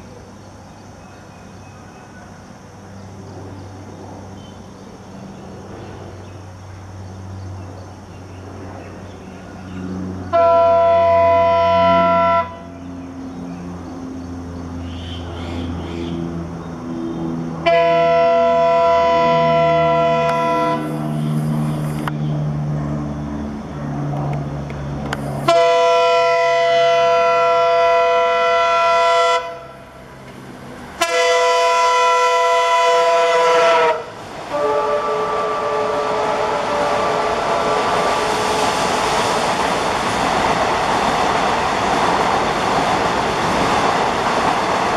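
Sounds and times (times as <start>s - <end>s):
diesel engine running low: 4.9s - 33.1s
locomotive horn blasts: 10.3s - 12.8s, 17.6s - 22.0s, 25.4s - 29.8s, 31.0s - 38.0s.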